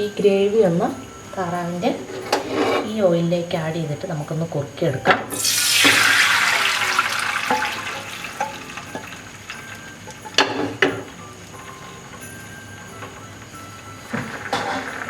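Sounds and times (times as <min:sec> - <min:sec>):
gravy sizzling in hot oil: 0:05.3 - 0:11.9, 0:13.6 - 0:15.0.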